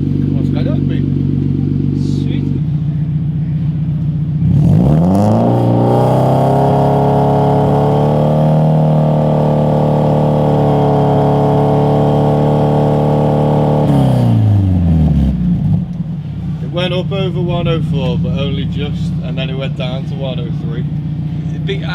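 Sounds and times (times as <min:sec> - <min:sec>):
car engine idling: 0:00.0 - 0:05.0, 0:14.6 - 0:21.9
car engine revving: 0:00.0 - 0:21.9.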